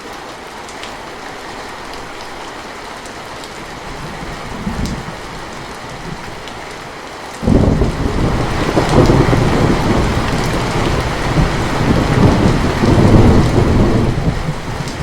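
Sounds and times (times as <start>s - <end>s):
steady rain falling: 0.0s - 15.0s
rolling thunder rumble: 7.4s - 15.0s.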